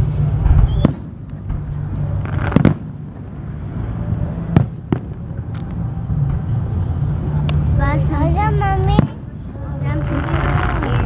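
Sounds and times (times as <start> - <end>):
fireworks bangs: 0.0 - 7.7, 8.8 - 11.0
low background rumble: 0.0 - 11.0.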